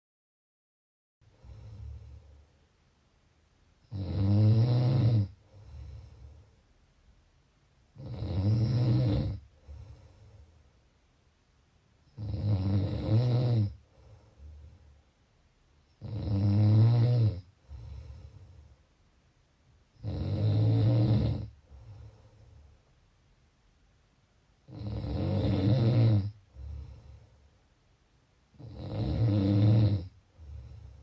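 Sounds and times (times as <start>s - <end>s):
soft breath: 1.2s - 2.8s, 5.4s - 6.9s, 9.4s - 11.0s, 13.8s - 15.4s, 17.5s - 19.1s, 21.5s - 23.0s, 26.4s - 27.8s, 30.1s - 31.0s
person snoring: 3.9s - 6.4s, 8.0s - 10.4s, 12.1s - 14.7s, 16.0s - 18.5s, 20.0s - 22.4s, 24.6s - 27.2s, 28.6s - 31.0s.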